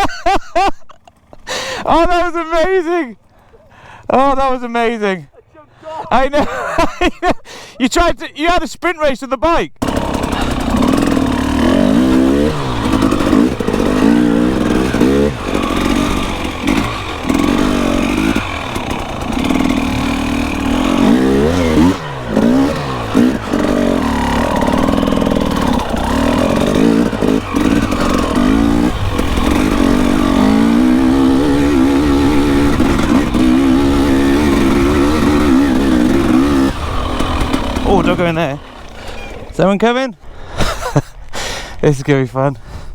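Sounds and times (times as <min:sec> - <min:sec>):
dirt bike engine revving: 0:09.8 - 0:40.0.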